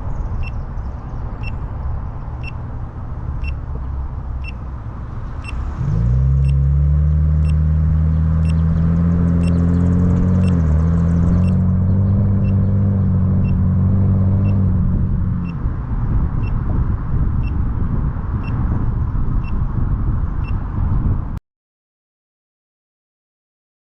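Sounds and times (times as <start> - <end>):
low engine drone: 0.0 - 18.6
car warning chime beeping: 2.4 - 2.6, 3.4 - 3.6, 4.4 - 4.6, 5.4 - 5.7, 6.4 - 6.6, 7.4 - 7.6, 8.4 - 8.6, 11.4 - 11.6, 13.4 - 13.6.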